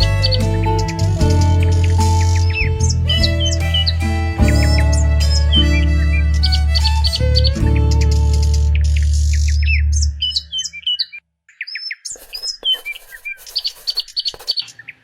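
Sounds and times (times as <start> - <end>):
small birds chirping: 8.8 - 15.0.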